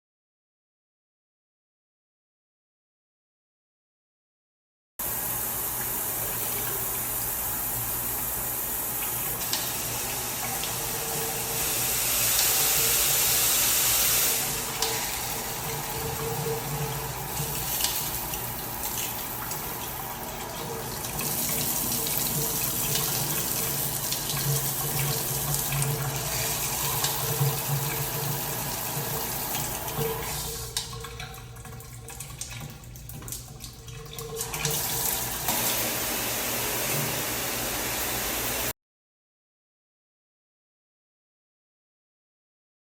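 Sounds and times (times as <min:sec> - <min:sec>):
shower head spraying water: 0:05.0 - 0:19.8, 0:21.1 - 0:30.9, 0:34.4 - 0:38.7.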